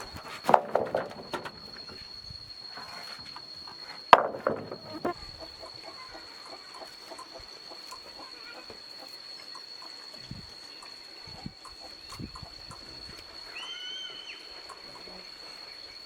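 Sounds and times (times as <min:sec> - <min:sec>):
scratching: 0:00.0 - 0:02.0, 0:02.7 - 0:05.2.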